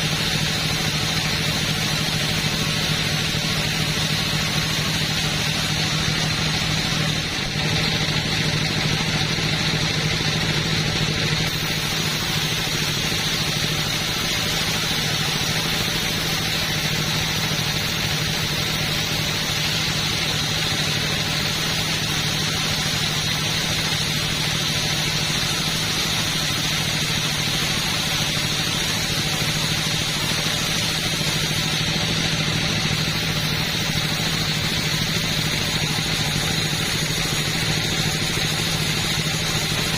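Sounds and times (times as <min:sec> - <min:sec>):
chainsaw running: 0:00.0 - 0:39.9.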